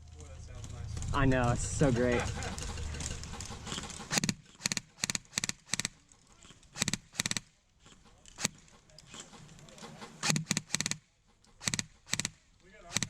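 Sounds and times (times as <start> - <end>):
airsoft gun bursts: 2.0 - 6.0, 6.6 - 7.5, 8.3 - 13.0.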